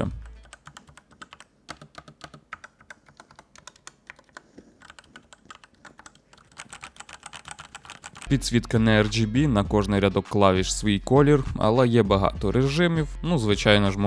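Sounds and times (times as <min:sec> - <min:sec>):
mechanical keyboard typing: 0:00.0 - 0:08.3.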